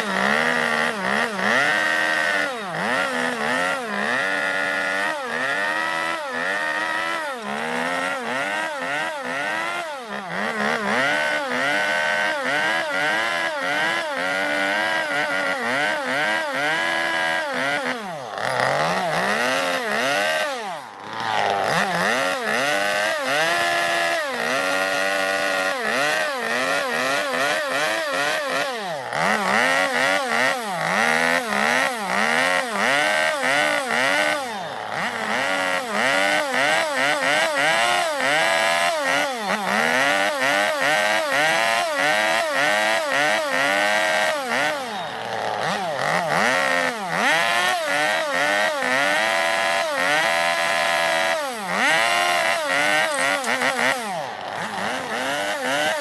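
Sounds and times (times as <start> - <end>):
chainsaw cutting wood: 0.0 - 56.0.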